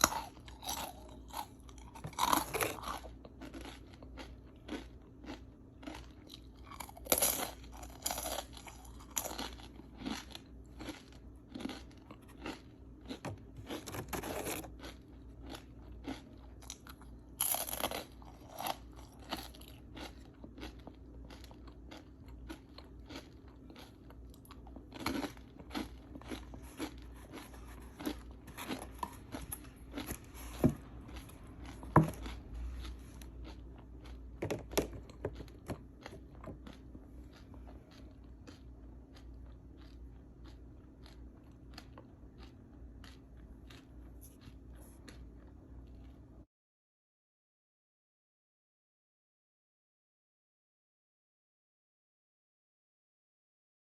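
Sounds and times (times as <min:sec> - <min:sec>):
crunchy food being chewed: 0:00.0 - 0:46.4.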